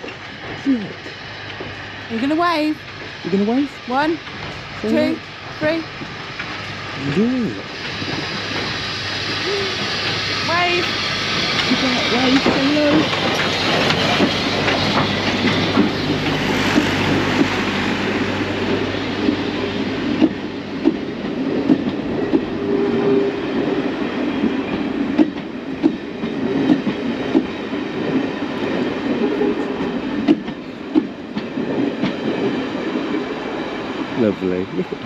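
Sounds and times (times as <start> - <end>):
steam train hissing rush: 0.0 - 35.0
wheels clicking over rail joints: 11.5 - 17.6.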